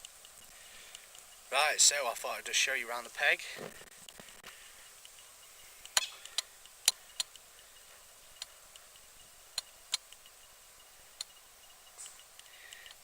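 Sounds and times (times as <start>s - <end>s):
sharp clicks and taps: 8.4s - 13.0s.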